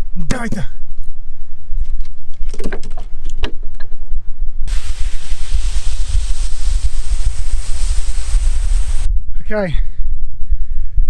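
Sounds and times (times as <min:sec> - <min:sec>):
steady hiss: 0:04.7 - 0:09.1
wind buffeting microphone: 0:04.7 - 0:11.0.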